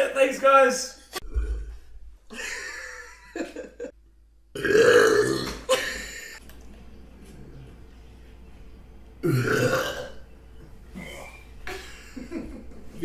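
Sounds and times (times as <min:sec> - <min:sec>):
person burping: 0:04.5 - 0:05.7, 0:09.2 - 0:10.2.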